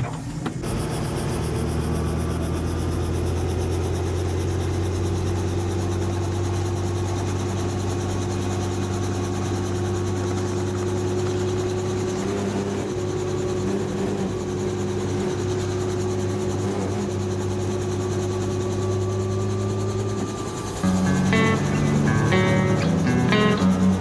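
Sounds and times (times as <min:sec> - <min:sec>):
helicopter engine and rotor: 0:00.3 - 0:24.0.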